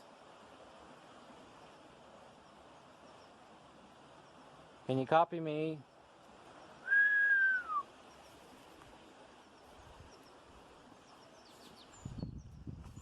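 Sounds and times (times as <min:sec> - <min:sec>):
whistled note sliding down: 0:06.8 - 0:07.8.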